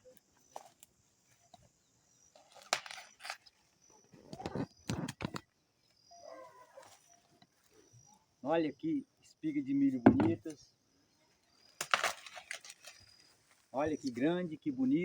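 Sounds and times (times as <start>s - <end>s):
dry corn leaves rustling: 0.0s - 8.2s, 11.3s - 15.0s
corn ears snapping off: 2.4s - 3.6s, 11.7s - 13.3s.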